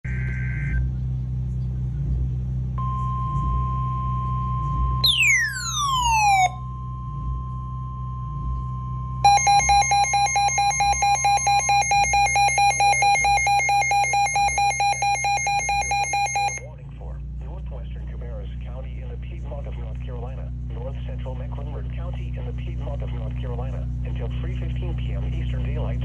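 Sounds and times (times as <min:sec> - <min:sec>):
rapidly pulsing electronic alarm: 0:00.0 - 0:00.9, 0:02.8 - 0:16.7
steady high alert tone: 0:05.0 - 0:06.7, 0:09.2 - 0:16.7.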